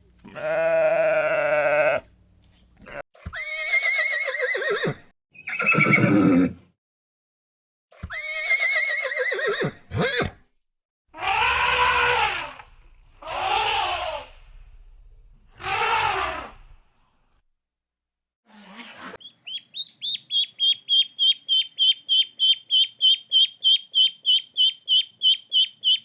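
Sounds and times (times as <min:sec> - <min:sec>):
farm animal calls: 0:19.2 - 0:26.0.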